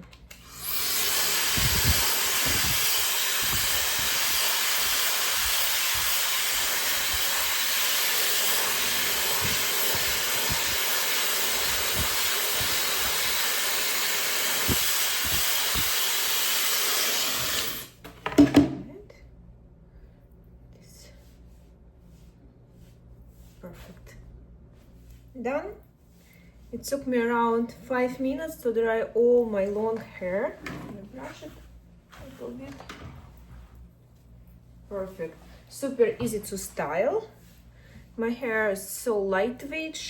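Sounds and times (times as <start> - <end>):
hair dryer running: 0.3 - 18.0.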